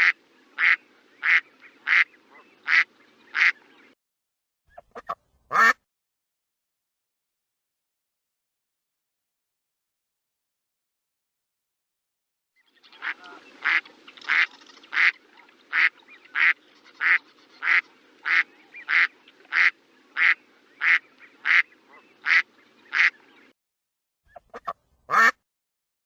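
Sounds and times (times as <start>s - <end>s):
duck quacking: 0.0s - 3.6s, 4.8s - 5.8s, 13.0s - 23.2s, 24.3s - 25.4s.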